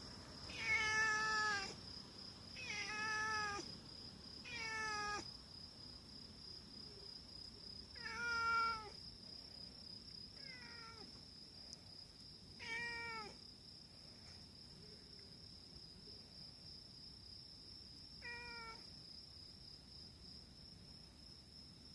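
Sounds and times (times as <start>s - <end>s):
cat meowing: 0.5s - 1.8s, 2.6s - 3.7s, 4.4s - 5.3s, 7.9s - 9.0s, 10.4s - 11.2s, 12.6s - 13.4s, 18.2s - 18.8s.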